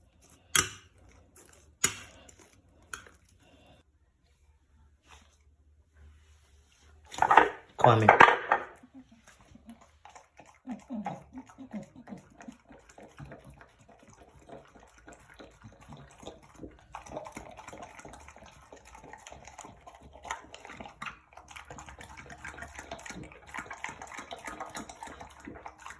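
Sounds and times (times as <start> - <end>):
dog chewing and slurping: 8.8 - 25.9.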